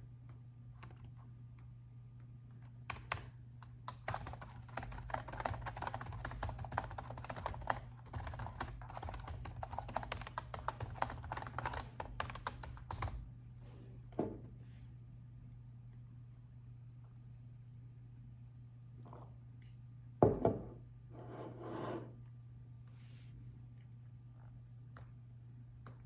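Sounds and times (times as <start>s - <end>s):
typing on laptop keyboard: 2.6s - 13.2s.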